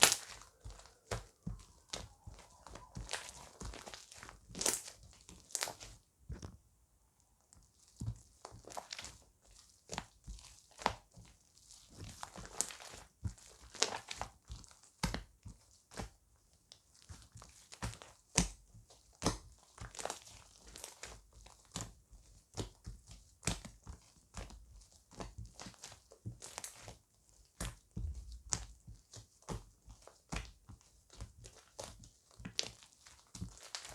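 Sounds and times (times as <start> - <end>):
slime squished by hand: 0.0 - 6.4.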